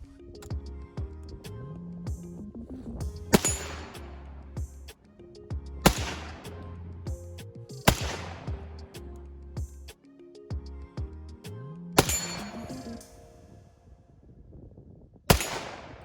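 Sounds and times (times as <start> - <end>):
background music: 0.0 - 14.2
rifle shots ringing: 3.3 - 4.0, 5.9 - 6.4, 7.9 - 8.5, 12.0 - 13.0, 15.3 - 16.0.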